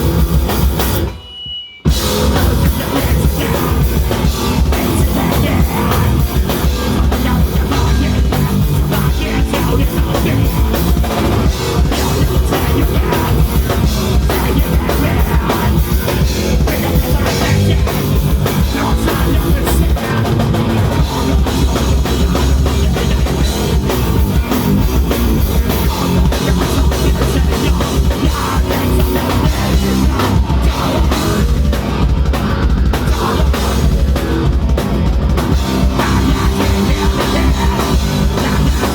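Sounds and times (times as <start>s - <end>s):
heavy rock music: 0.0s - 38.9s
pounding drum kit: 0.0s - 38.9s.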